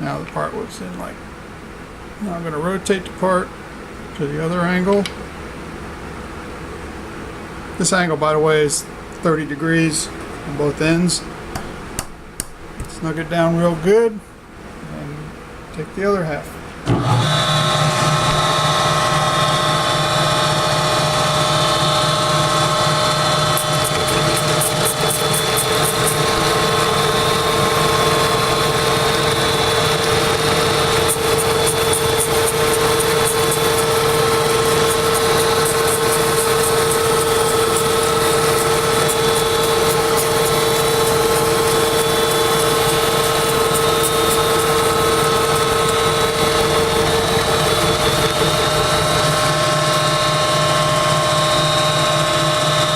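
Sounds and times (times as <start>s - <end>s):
milling machine cutting metal: 16.9s - 52.9s.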